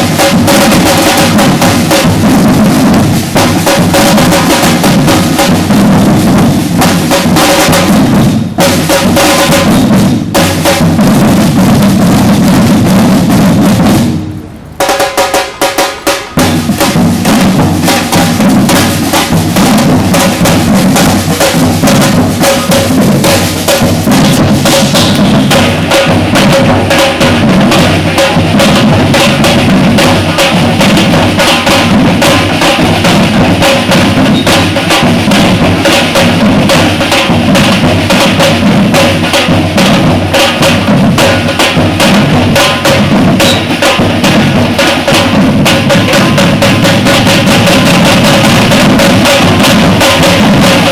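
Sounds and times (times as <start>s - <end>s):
samba percussion ensemble: 0.0s - 50.9s
snare drums: 0.0s - 50.9s
deep bass drums: 16.4s - 36.8s.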